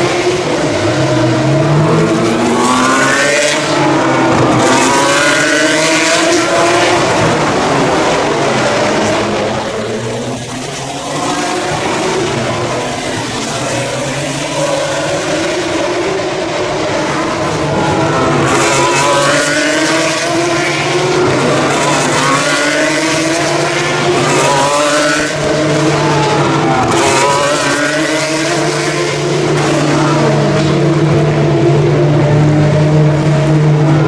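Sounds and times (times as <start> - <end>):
race cars passing: 0.0 - 34.0.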